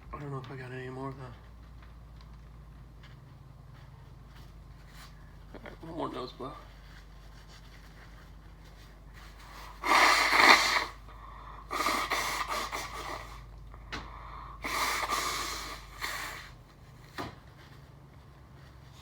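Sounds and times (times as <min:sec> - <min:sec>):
man blowing nose hard: 0:09.3 - 0:13.5, 0:14.4 - 0:16.7.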